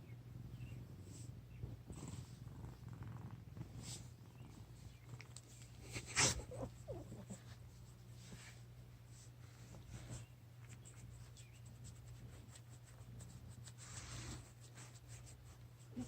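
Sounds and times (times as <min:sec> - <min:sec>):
cat purring in sleep: 0:00.0 - 0:08.0.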